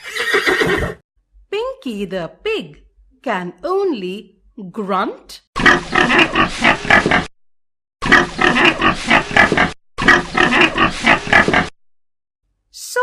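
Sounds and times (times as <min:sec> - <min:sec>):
pig grunting: 0:05.6 - 0:07.3, 0:08.0 - 0:11.8.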